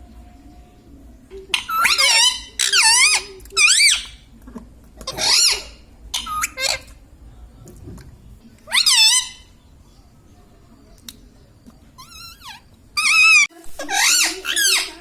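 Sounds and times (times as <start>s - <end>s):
parrot shrill calls: 1.5s - 4.2s, 5.1s - 6.9s, 8.7s - 9.5s, 12.0s - 15.0s.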